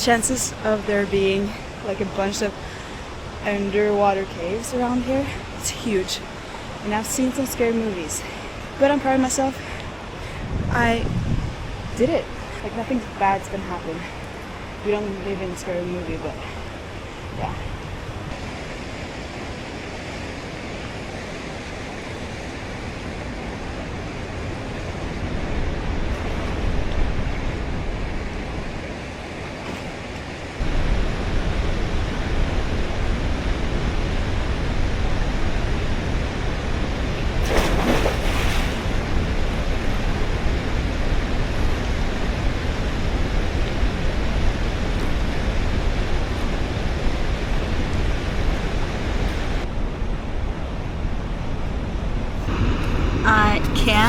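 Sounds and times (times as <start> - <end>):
waterfall rushing: 52.2 - 54.0.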